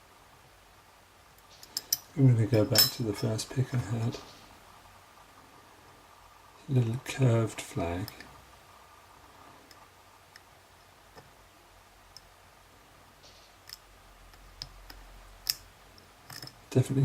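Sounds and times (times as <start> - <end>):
lock pick clicking on pins: 13.6 - 16.6.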